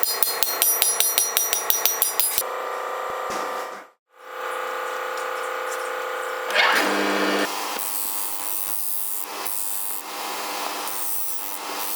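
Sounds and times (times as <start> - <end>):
electric power tool running: 4.3 - 11.9.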